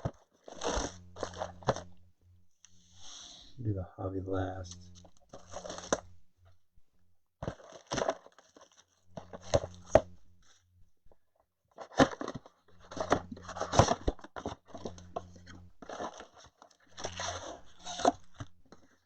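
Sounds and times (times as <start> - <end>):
packaging tearing and crunching: 0.4 - 1.9, 5.4 - 6.0, 7.4 - 9.7.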